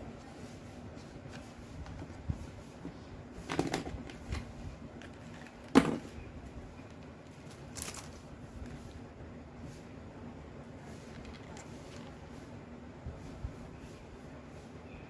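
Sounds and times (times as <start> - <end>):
stationery knocking and rustling: 1.0 - 6.2.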